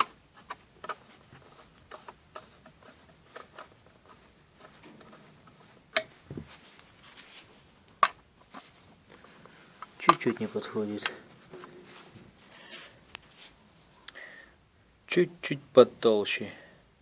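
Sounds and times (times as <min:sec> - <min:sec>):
bolt clicks and metal taps: 0:10.0 - 0:10.4.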